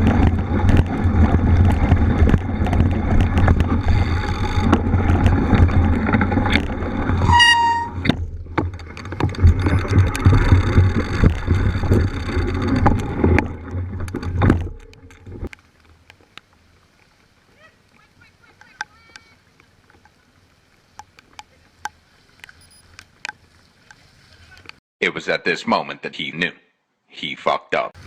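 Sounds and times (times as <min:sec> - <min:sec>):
tyre and frame rattle: 0:00.0 - 0:15.4
bike rumble on microphone: 0:00.0 - 0:15.5
short pitched squeal: 0:07.2 - 0:08.1.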